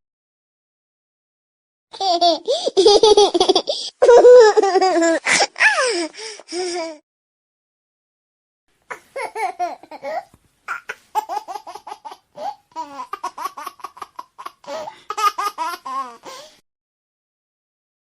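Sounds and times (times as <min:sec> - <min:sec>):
baby laughing: 0:01.9 - 0:07.0, 0:08.9 - 0:16.5.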